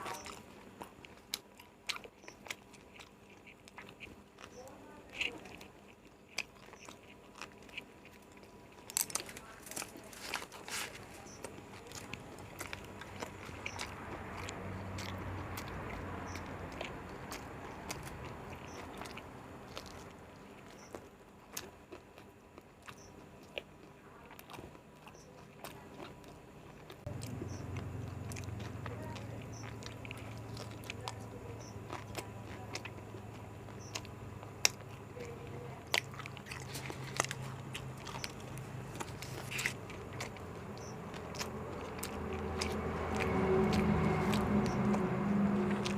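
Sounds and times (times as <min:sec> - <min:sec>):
biting and chewing crunchy food: 0:00.0 - 0:45.9
low steady hum: 0:00.0 - 0:45.9
wet mouth clicks: 0:24.4 - 0:45.9.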